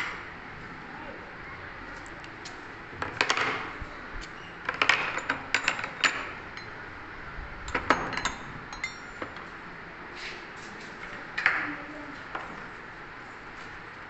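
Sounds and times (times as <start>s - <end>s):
metal tools clinking in toolbox: 7.7s - 9.4s.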